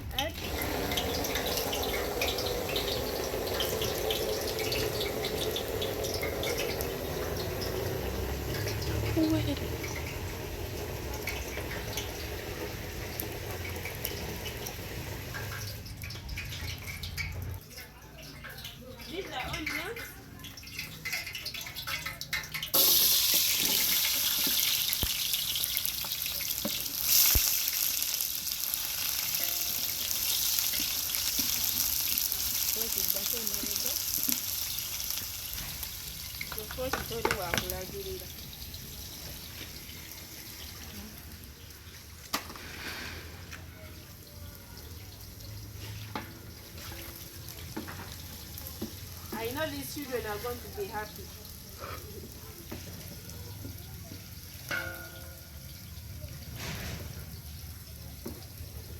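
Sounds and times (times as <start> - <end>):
oil pouring into a pot: 0.3 - 17.8, 20.5 - 37.6
small crackles: 19.6 - 37.2.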